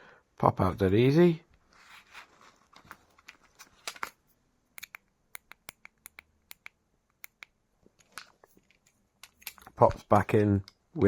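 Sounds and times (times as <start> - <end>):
sharp clicks and taps of tools: 4.8 - 10.8.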